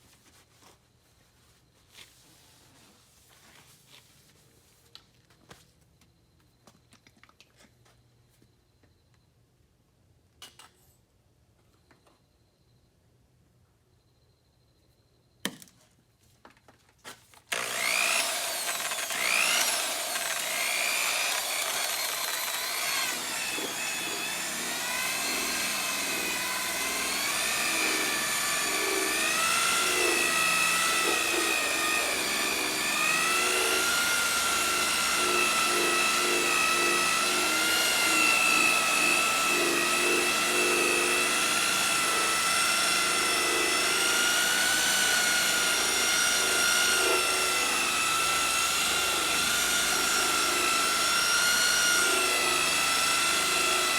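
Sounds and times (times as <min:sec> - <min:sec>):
electric buffer whining: 0:17.5 - 0:53.9.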